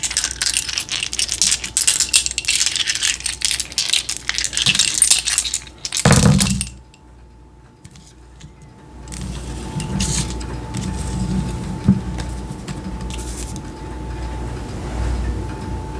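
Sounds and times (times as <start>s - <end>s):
coins and trinkets clattering: 0.0s - 7.0s, 7.9s - 13.7s.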